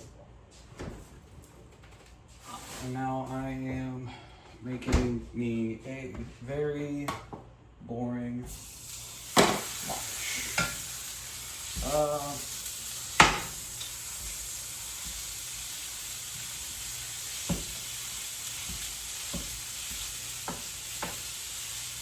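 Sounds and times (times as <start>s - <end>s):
food sizzling in a pan: 8.5s - 22.0s
utensil knocking against pan: 13.2s - 13.5s, 18.7s - 21.2s.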